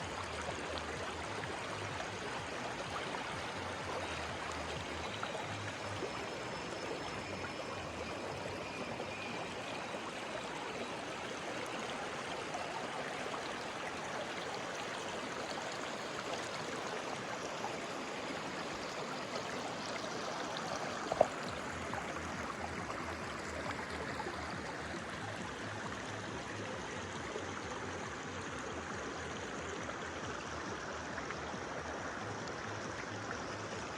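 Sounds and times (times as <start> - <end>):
stream flowing over rocks: 0.0 - 33.9.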